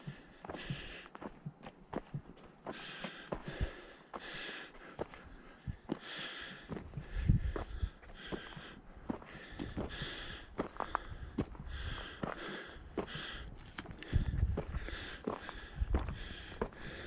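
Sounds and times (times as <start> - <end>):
footsteps on a trail: 0.0 - 17.0
person breathing heavily: 0.0 - 17.0.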